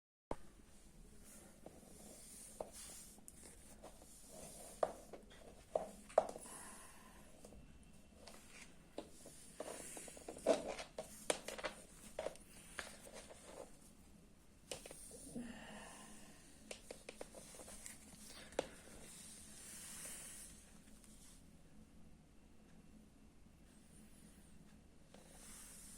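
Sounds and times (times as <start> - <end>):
hands rubbing and scraping helmet: 8.2 - 13.8.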